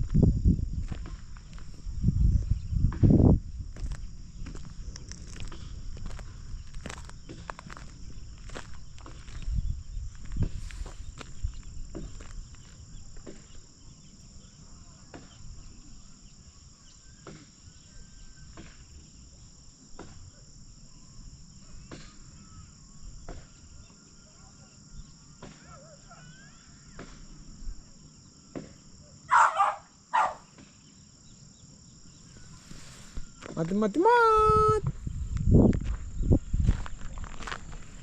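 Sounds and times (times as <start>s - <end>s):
soft footsteps: 0.0s - 13.7s, 34.8s - 38.0s
crickets and insects chirring: 0.0s - 38.0s.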